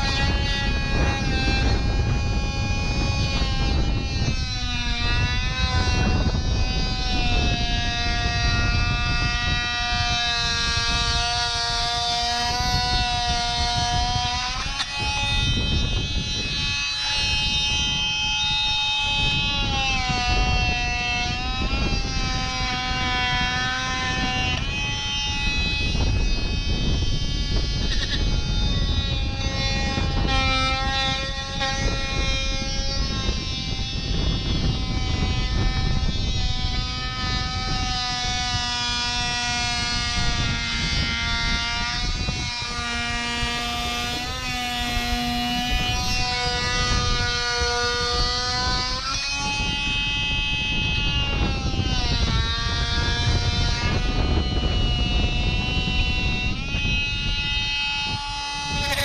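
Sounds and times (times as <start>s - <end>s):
droning multi-toned hum: 0.0s - 59.0s
wind buffeting microphone: 0.0s - 59.0s.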